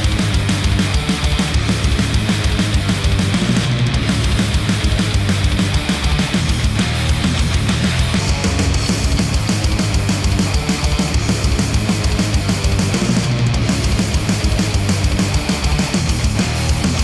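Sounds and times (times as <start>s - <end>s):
heavy rock music through headphones: 0.0s - 17.0s.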